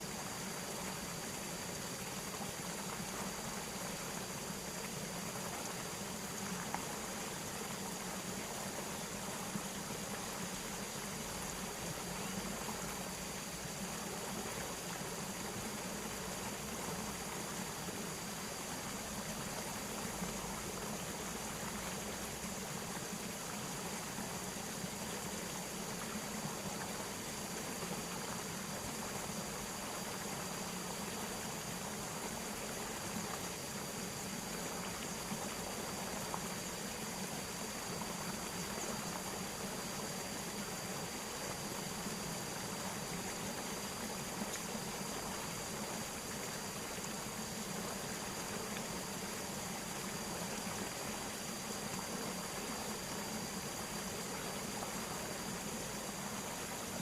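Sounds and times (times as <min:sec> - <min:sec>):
rush of flowing water: 0:00.0 - 0:57.0.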